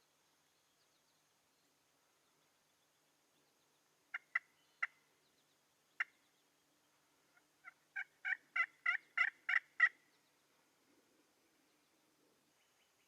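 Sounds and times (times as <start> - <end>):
turkey yelps: 7.6 - 10.0.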